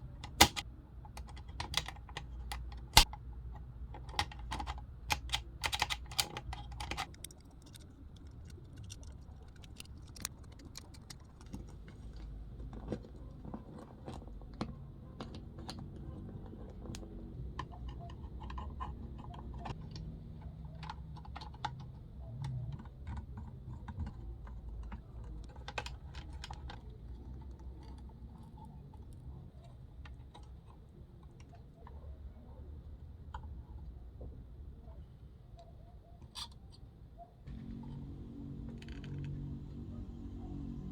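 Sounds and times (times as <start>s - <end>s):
small parts clicking and tapping: 0.0s - 32.2s, 37.5s - 39.8s
steady low hum: 37.5s - 40.9s.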